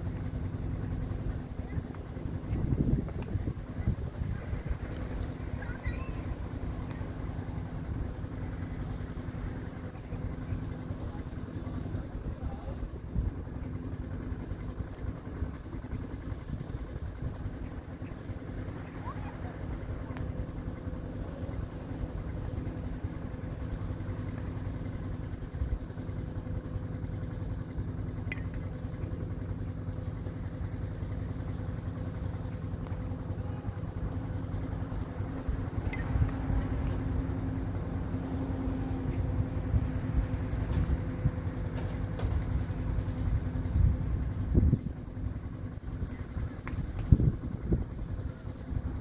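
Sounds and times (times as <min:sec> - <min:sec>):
steady low hum: 0:00.0 - 0:49.0
wind buffeting microphone: 0:01.0 - 0:08.2, 0:35.2 - 0:49.0
faint clicks: 0:28.2 - 0:28.7.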